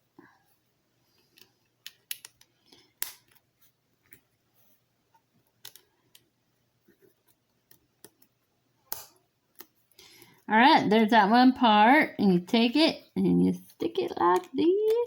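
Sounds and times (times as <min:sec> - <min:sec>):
plastic pieces clicking: 0:01.3 - 0:03.4, 0:05.6 - 0:06.3.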